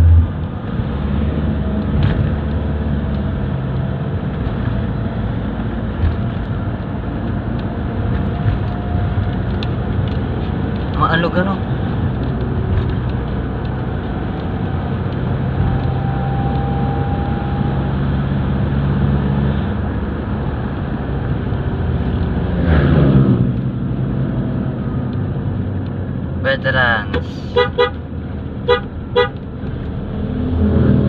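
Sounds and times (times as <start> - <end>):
engine and road noise in cabin: 0.0 - 31.0.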